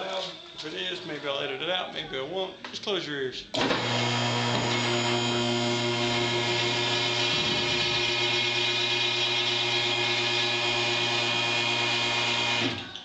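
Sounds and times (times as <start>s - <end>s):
hydraulic pump motor humming: 3.5s - 13.0s.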